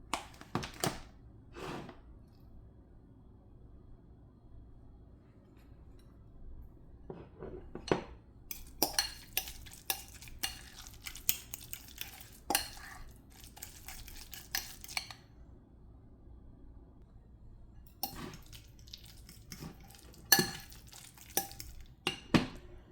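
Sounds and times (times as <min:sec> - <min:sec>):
utensil scraping a bowl: 0:08.5 - 0:15.2, 0:17.9 - 0:21.9.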